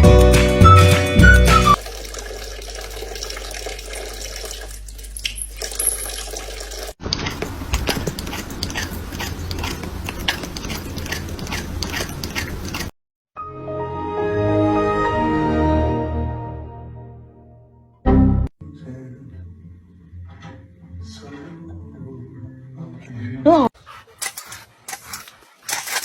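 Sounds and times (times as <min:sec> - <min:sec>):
water running from a tap: 0:01.7 - 0:12.9
small clicks and splashes: 0:04.5 - 0:12.9, 0:24.2 - 0:26.0.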